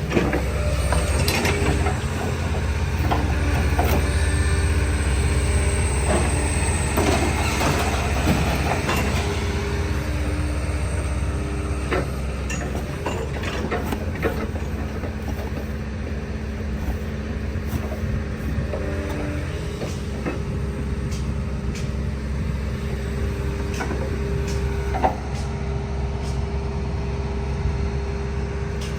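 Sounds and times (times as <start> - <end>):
scrap metal clanking and scraping: 0.0 - 21.9
heavy machinery engine rumbling: 0.0 - 28.9.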